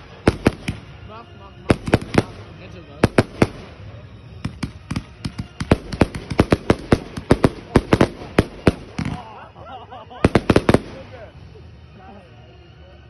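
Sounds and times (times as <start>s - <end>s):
fireworks banging: 0.0s - 1.1s, 1.7s - 9.5s, 10.2s - 11.2s.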